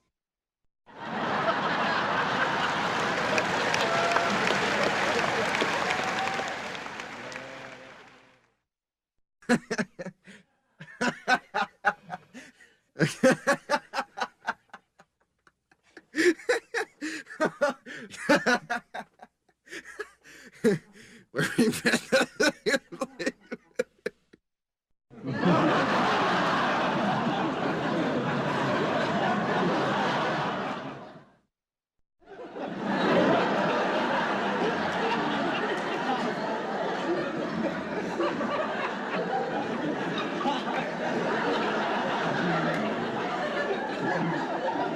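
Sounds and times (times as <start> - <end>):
group laughter: 0.9 - 8.0, 9.4 - 24.4, 25.1 - 31.4, 32.3 - 44.9
person laughing: 9.4 - 14.8, 15.7 - 24.2.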